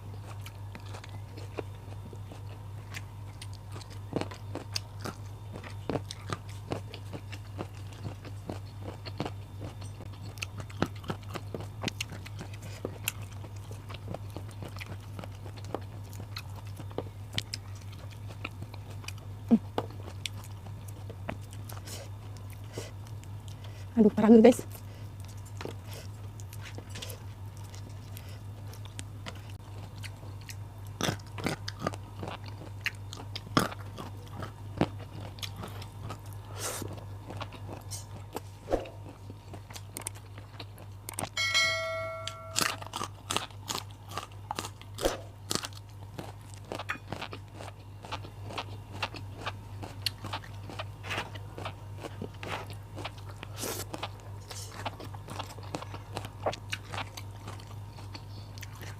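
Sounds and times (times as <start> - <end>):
steady low hum: 0.0 - 58.9
brief pitched ringing tone: 41.4 - 42.9
crunching raw vegetables: 42.5 - 58.9.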